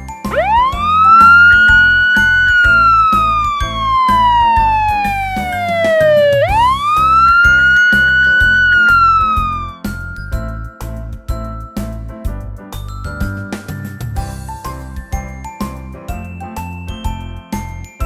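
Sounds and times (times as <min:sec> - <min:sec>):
music with steady beat: 0:00.0 - 0:18.0
police siren wailing: 0:00.3 - 0:09.8.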